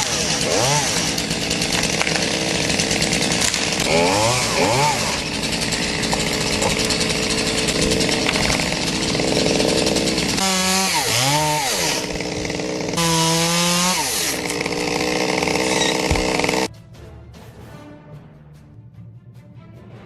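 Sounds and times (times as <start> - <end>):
chainsaw revving: 0.0 - 16.7.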